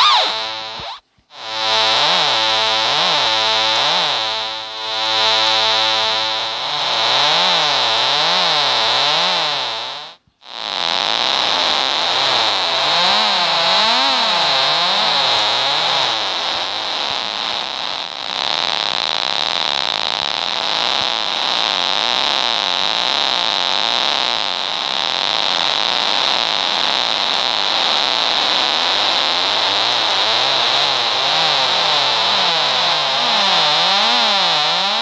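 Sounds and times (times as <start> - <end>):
warbling synth tone: 0.0 - 1.0
harsh synthesizer hiss: 0.0 - 35.0.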